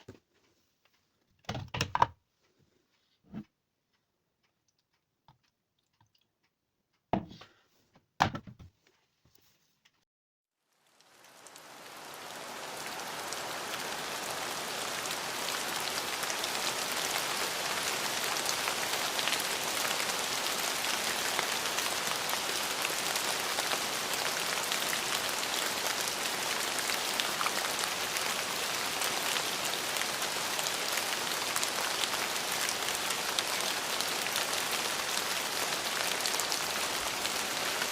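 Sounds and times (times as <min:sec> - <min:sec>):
knocks or taps: 0:07.1 - 0:07.6
steady rain hiss: 0:10.6 - 0:37.9.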